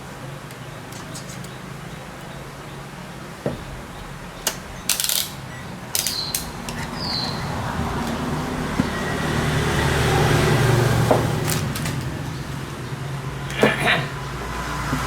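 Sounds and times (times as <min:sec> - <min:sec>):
sharp mechanical clicks: 0:04.4 - 0:07.4.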